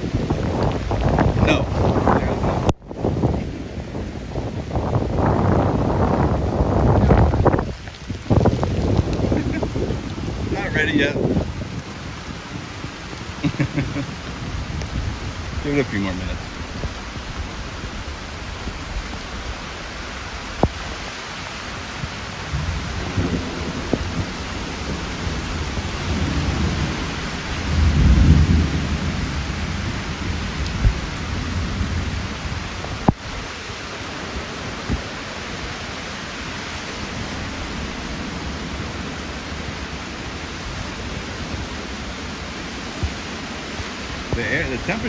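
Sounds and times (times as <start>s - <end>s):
thunder rumble: 0.0s - 21.0s, 21.8s - 33.2s
heavy rain: 0.0s - 45.0s.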